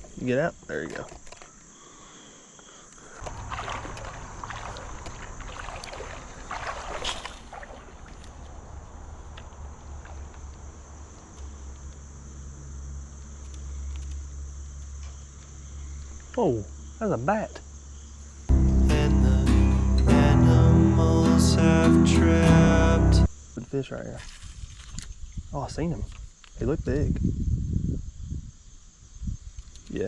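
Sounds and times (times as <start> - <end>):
insects droning: 0.0 - 30.0
water sloshing and splashing: 3.2 - 11.0.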